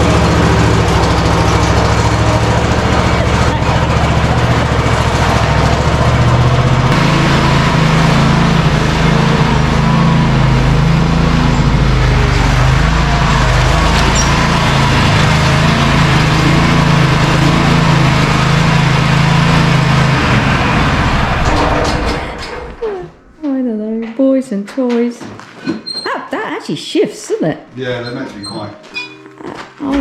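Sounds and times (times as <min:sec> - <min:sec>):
farm vehicle engine running: 0:00.0 - 0:23.4, 0:29.6 - 0:30.0.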